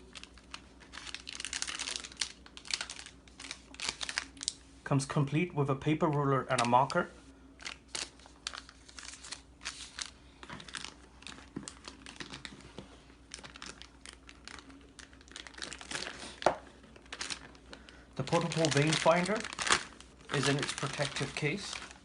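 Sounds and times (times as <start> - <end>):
packaging crinkling and rustling: 0.0 - 4.6, 6.1 - 22.0.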